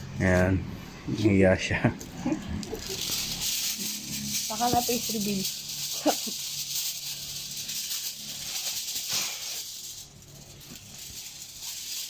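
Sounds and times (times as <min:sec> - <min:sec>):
aluminium foil crinkling: 0:02.6 - 0:12.0.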